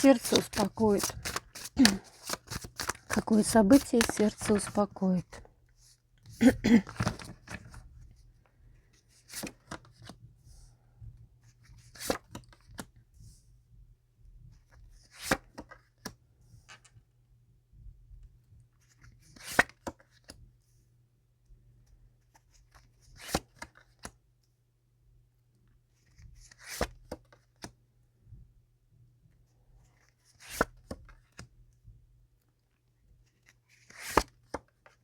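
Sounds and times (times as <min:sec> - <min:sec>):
cards shuffling and snapping: 0:00.0 - 0:04.9, 0:33.8 - 0:34.7.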